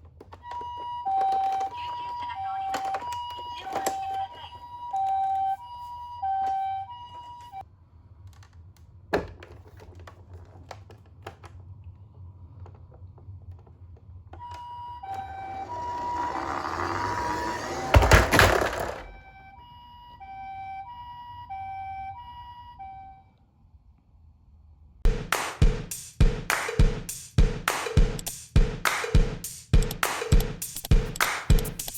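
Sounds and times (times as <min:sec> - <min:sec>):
toy car rolling rattle: 0:00.0 - 0:04.4, 0:15.1 - 0:19.3
toy two-tone siren: 0:00.3 - 0:07.6, 0:14.4 - 0:23.4
clatter of knocks: 0:15.6 - 0:19.1.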